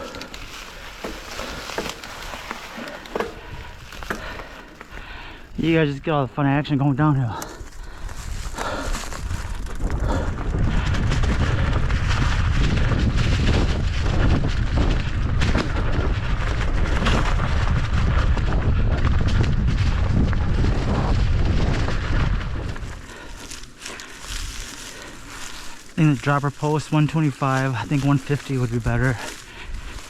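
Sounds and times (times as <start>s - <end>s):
bike rattles and clicks: 0.0s - 30.0s
bike tyre noise: 0.0s - 30.0s
wind rumble on microphone: 7.7s - 25.9s, 28.6s - 30.0s.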